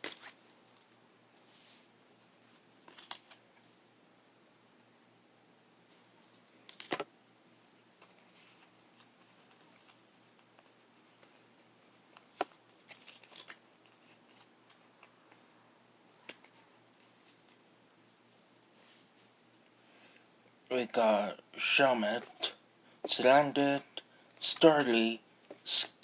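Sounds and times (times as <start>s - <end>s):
cards rustling: 0.0s - 1.0s, 2.5s - 3.6s, 6.2s - 7.0s, 8.0s - 15.4s
foil wrapper crinkling: 12.8s - 14.5s.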